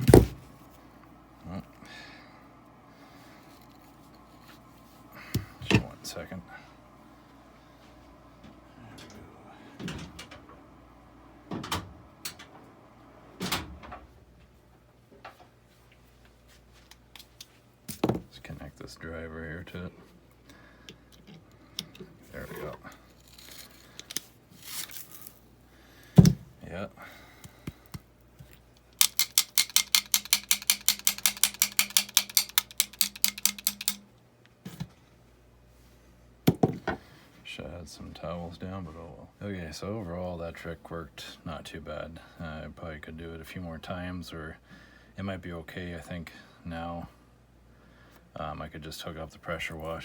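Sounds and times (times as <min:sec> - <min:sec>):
objects knocking and clunking: 0:00.0 - 0:00.5, 0:17.9 - 0:18.3, 0:26.1 - 0:26.5, 0:36.5 - 0:37.1
low steady hum: 0:00.0 - 0:50.0
drill clutch clicking: 0:28.9 - 0:34.0.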